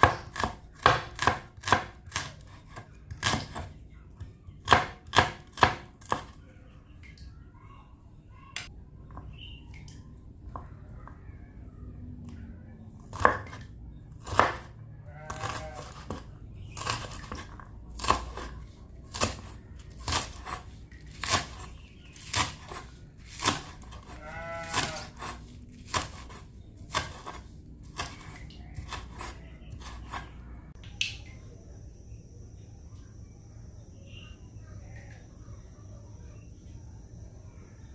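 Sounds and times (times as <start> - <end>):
knife chopping on cutting board: 0.0 - 3.7, 4.6 - 6.3, 13.1 - 13.6, 14.2 - 14.7, 19.1 - 30.3.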